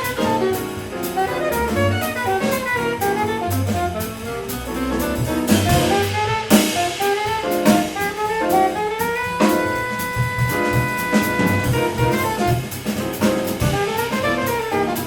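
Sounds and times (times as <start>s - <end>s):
saxophone: 0.0s - 4.3s, 5.6s - 12.9s, 13.6s - 15.0s
piano: 0.0s - 15.0s
walking bass line: 0.0s - 15.0s.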